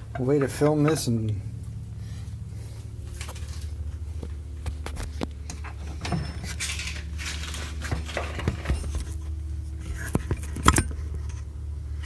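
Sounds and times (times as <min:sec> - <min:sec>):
steady low hum: 0:00.0 - 0:12.0
metal tools clinking and rattling: 0:00.1 - 0:01.3, 0:05.5 - 0:09.2.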